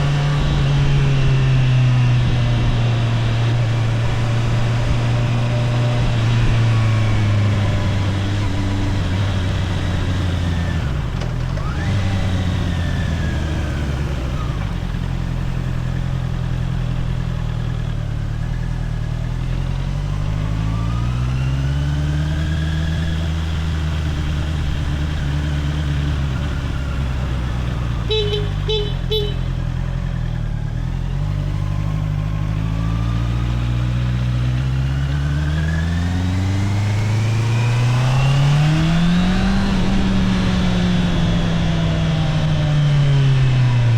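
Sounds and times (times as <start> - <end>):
motorcycle engine accelerating: 0.0 - 43.9
horn toots: 28.0 - 29.8.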